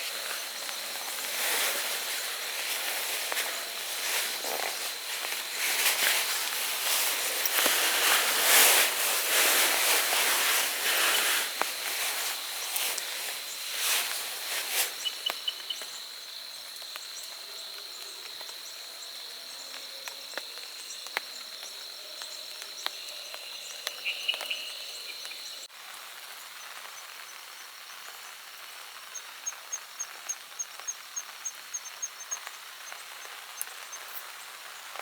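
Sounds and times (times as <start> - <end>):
high insect trill: 0.0 - 25.7
rain hiss: 0.0 - 35.0.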